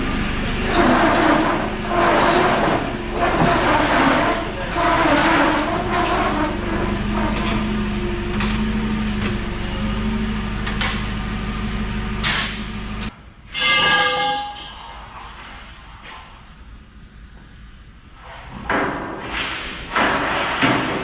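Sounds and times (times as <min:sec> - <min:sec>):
truck engine running: 0:00.0 - 0:13.1
heavy metal pieces banging: 0:00.0 - 0:14.9, 0:18.6 - 0:21.0.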